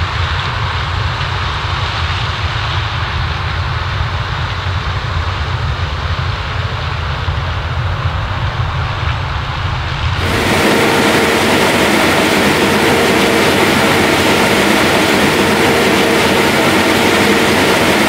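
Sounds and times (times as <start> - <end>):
bright loud machine noise: 10.2 - 18.0
farm machinery engine rumble: 10.2 - 18.0.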